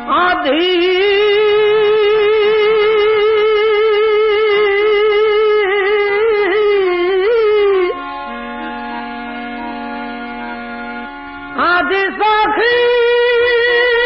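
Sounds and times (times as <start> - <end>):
man singing a long high note: 11.6 - 14.0.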